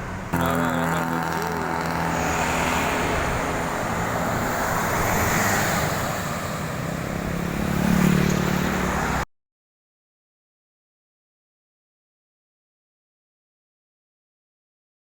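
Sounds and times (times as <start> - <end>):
vehicle engine drone passing: 0.0 - 9.2
highway traffic rushing: 0.0 - 9.3.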